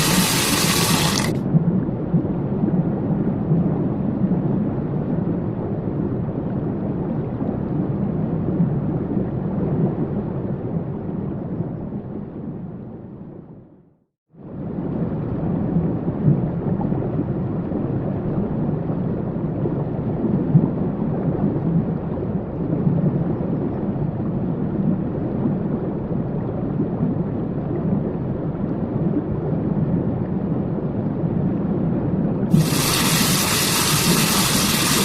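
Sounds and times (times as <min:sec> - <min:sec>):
waterfall rushing: 0:00.0 - 0:01.3, 0:32.5 - 0:35.0.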